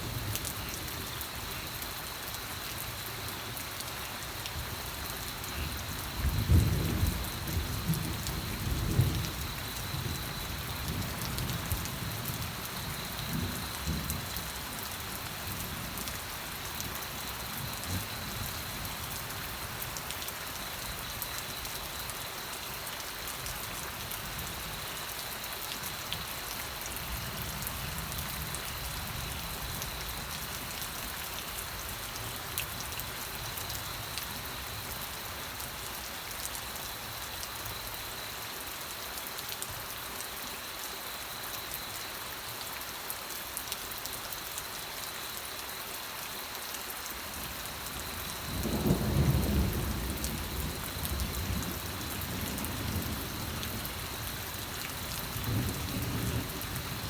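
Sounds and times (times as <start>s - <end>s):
steady rain falling: 0.0s - 57.0s
low rumble of thunder: 4.5s - 20.0s, 26.8s - 35.8s, 47.3s - 57.0s.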